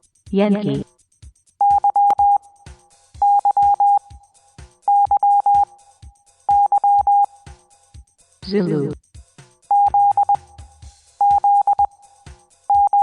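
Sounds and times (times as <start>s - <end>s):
morse code beeps: 1.6s - 2.4s, 3.2s - 4.1s, 4.9s - 5.7s, 6.5s - 7.3s, 9.7s - 10.5s, 11.2s - 11.9s, 12.7s - 13.0s.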